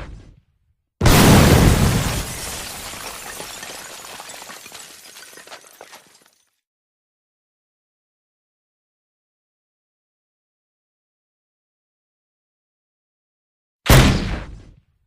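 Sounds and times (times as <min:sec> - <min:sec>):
explosion rumble: 0:01.0 - 0:02.5
grenade explosion blast: 0:01.0 - 0:03.3, 0:13.9 - 0:14.8
debris crackling and clinking: 0:01.9 - 0:06.5.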